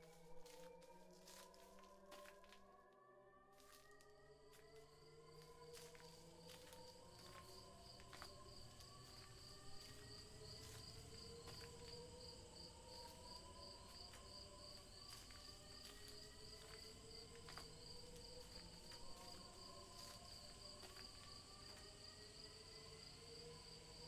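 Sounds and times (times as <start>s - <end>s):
crickets chirping: 5.8s - 24.0s.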